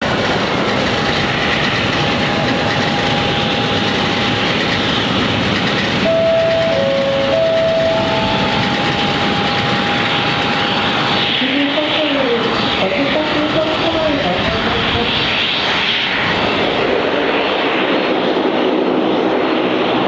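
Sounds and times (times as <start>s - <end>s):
turboprop engines running: 0.0s - 20.0s
clear stepping tones: 1.2s - 13.8s.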